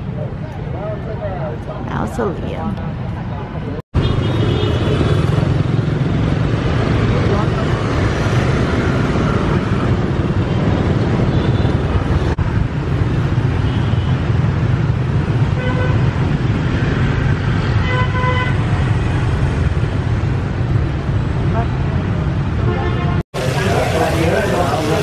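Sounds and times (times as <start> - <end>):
street traffic: 0.0 - 25.0
vehicle horn honking: 17.8 - 18.6.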